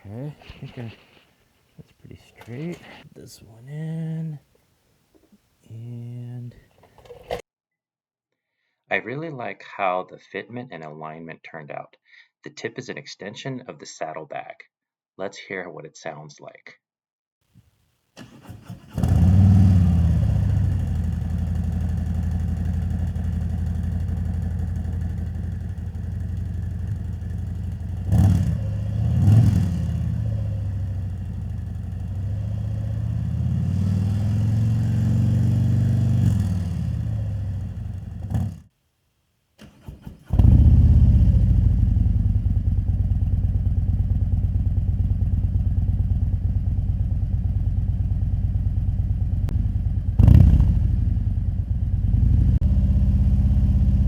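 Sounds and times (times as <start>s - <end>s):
motorcycle engine idling and revving: 18.2s - 38.7s, 39.6s - 54.0s.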